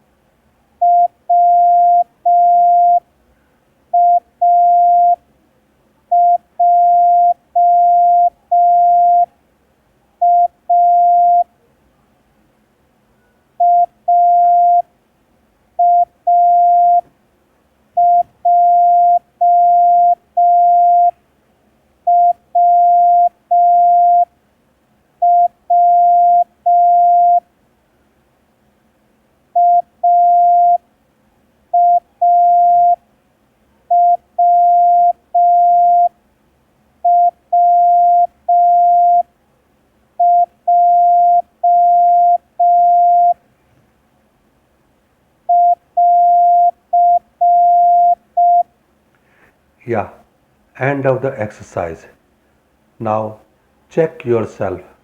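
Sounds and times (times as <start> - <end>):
morse code beeps: 0.8 - 3.0, 4.0 - 5.2, 6.2 - 9.3, 10.2 - 11.5, 13.6 - 14.8, 15.8 - 17.0, 18.0 - 21.2, 22.1 - 24.3, 25.2 - 27.4, 29.6 - 30.8, 31.8 - 33.0, 33.9 - 36.1, 37.1 - 39.2, 40.2 - 43.4, 45.5 - 48.7.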